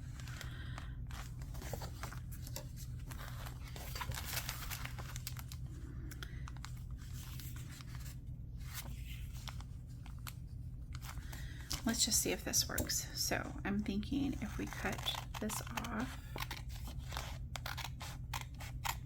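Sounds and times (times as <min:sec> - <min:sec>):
steady low hum: 0:00.0 - 0:19.0
paper rustling and tearing: 0:01.1 - 0:05.6, 0:14.4 - 0:19.0
small clicks and crinkles: 0:14.0 - 0:19.0.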